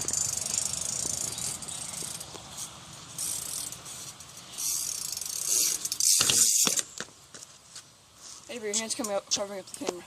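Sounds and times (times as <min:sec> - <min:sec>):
bike hub ratchet clicking: 0:00.0 - 0:02.4, 0:03.1 - 0:06.9.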